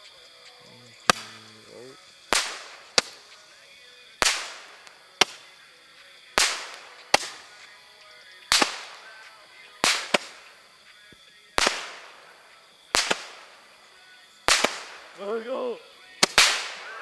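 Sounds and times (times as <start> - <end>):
firework bangs with echo: 0.9 - 17.0.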